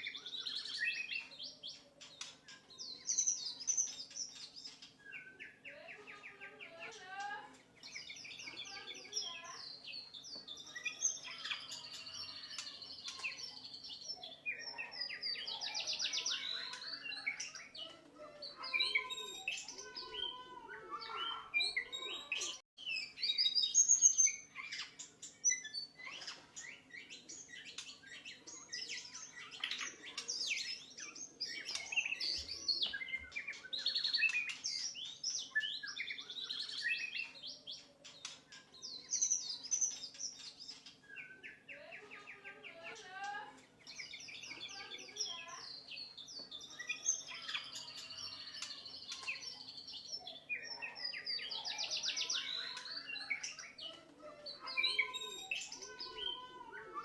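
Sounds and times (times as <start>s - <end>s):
bird singing whistles and trills: 21.0s - 41.6s.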